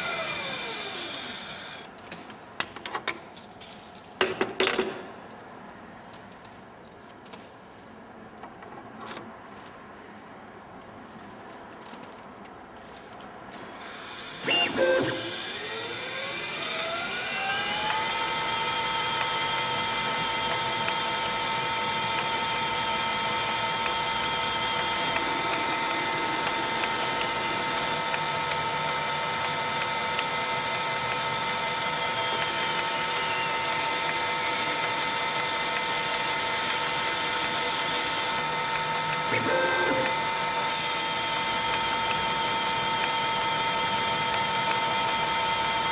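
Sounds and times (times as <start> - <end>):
lathe motor whine: 0.0 - 1.9, 13.7 - 45.9.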